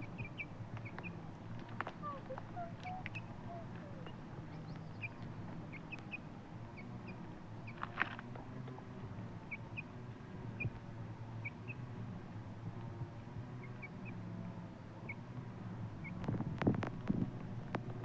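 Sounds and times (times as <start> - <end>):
chicken peeping: 0.0 - 10.8, 11.4 - 11.9, 13.5 - 14.3, 14.9 - 15.4, 16.0 - 17.1
low steady hum: 0.0 - 18.0.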